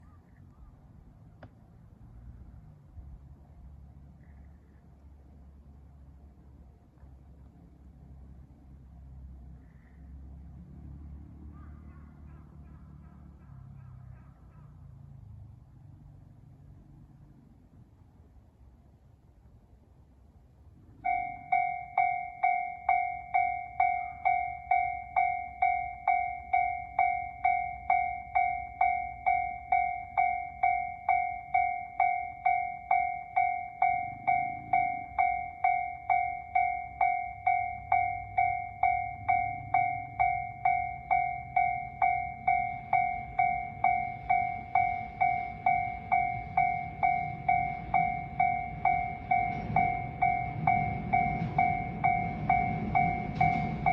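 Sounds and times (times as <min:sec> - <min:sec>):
low rumble of approaching train: 0:00.0 - 0:53.9
level crossing warning bell: 0:20.8 - 0:53.9.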